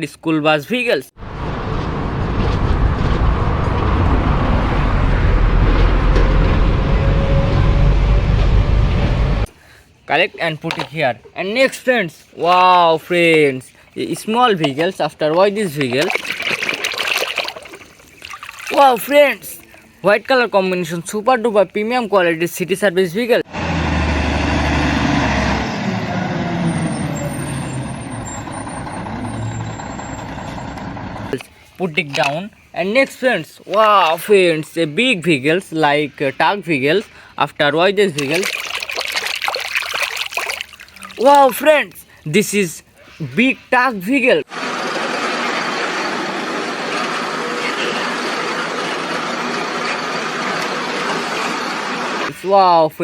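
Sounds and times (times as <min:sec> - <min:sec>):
low rumble: 0:01.2 - 0:09.5
truck engine running: 0:01.2 - 0:09.5, 0:23.5 - 0:31.4, 0:44.5 - 0:52.3
water spraying and splashing: 0:15.8 - 0:20.0, 0:38.2 - 0:42.1.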